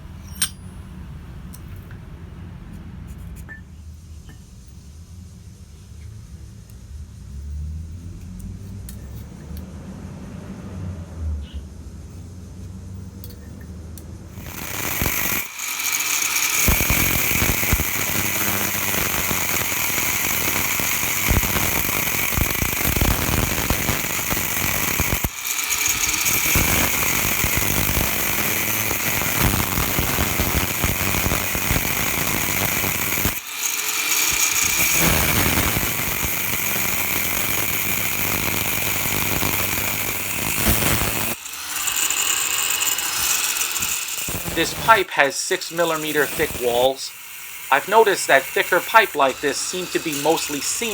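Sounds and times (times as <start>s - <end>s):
electric grinder grinding steel: 14.3s - 50.9s.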